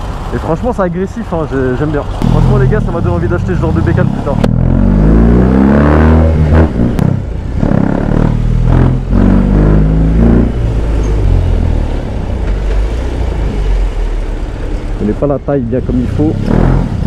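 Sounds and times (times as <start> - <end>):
motorcycle engine accelerating hard: 2.2 - 12.0, 16.2 - 17.0.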